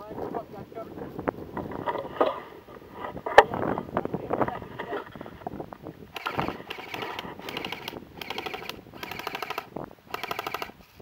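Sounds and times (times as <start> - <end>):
airsoft guns firing bursts: 6.1 - 10.8.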